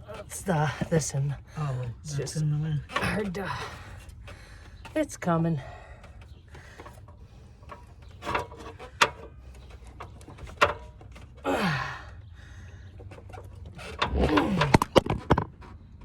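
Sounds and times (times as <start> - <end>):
clicks and knocks of hose clamp: 6.0 - 11.4, 12.9 - 15.7.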